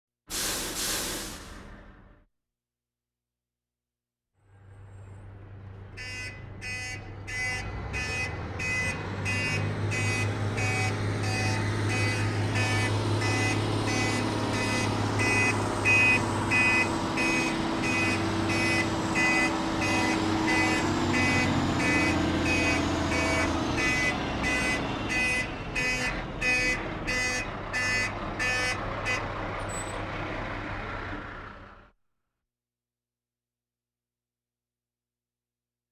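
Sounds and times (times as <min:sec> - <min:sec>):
diesel truck engine running: 0:04.6 - 0:31.9
reversing alarm beeping: 0:06.0 - 0:28.8.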